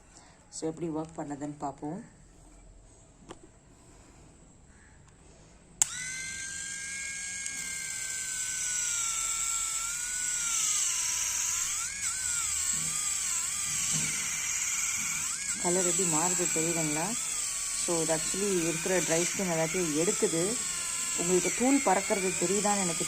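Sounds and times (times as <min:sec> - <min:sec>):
electric callus remover whining: 0:05.8 - 0:23.0.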